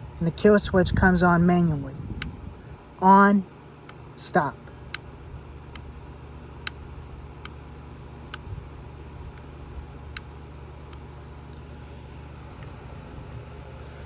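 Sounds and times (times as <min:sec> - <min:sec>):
steady low hum: 0:00.0 - 0:14.0
sharp single clicks: 0:06.6 - 0:07.6, 0:08.3 - 0:08.6, 0:10.1 - 0:11.6.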